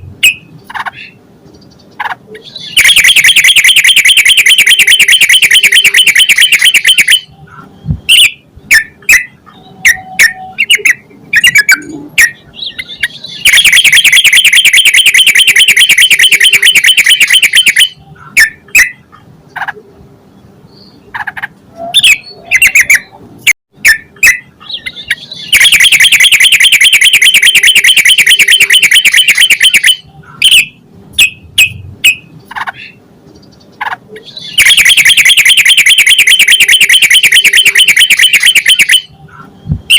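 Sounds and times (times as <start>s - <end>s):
sharp bird notes: 2.0s - 3.8s, 4.4s - 15.9s, 23.9s - 33.0s, 34.2s - 39.9s.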